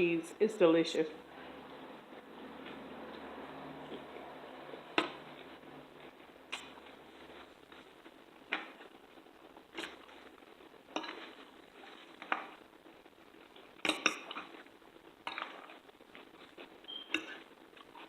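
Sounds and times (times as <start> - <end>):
cutlery clinking against plate: 10.9 - 11.3, 13.8 - 14.5, 17.0 - 17.4.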